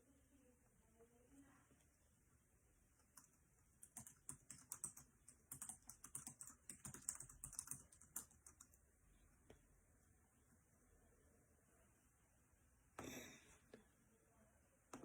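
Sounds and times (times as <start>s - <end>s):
faint keyboard typing: 2.9s - 10.1s.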